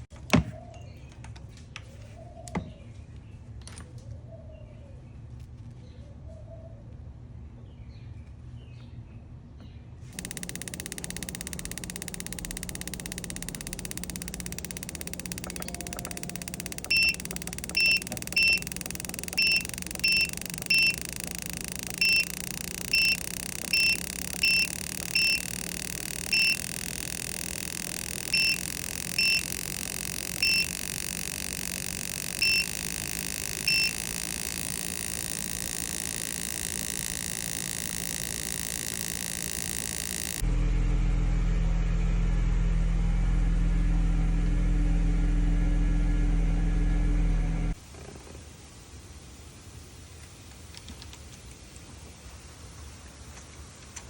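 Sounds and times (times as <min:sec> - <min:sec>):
short electronic beeps: 0:10.2 - 0:40.4.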